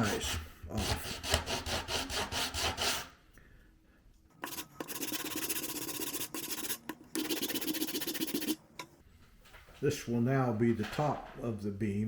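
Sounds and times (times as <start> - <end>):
sanding wood back and forth: 0.0 - 3.0.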